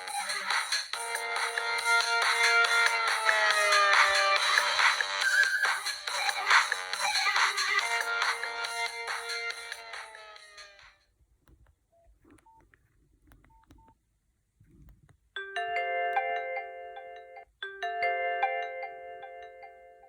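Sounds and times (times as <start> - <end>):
phone key beeps: 13.3 - 14.0
phone ringtone chime: 15.4 - 20.0.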